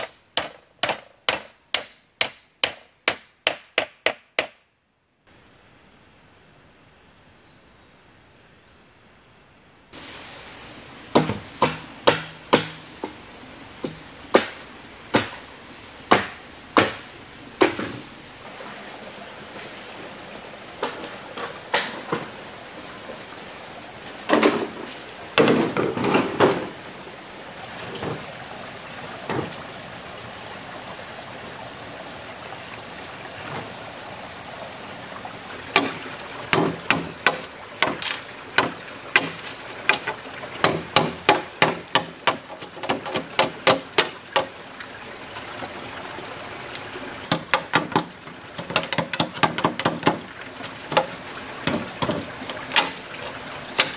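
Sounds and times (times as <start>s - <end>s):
hand tool striking wood: 0.0s - 4.6s, 11.2s - 13.2s, 13.8s - 15.4s, 16.1s - 17.0s, 35.8s - 44.5s, 47.3s - 50.2s, 51.7s - 53.0s.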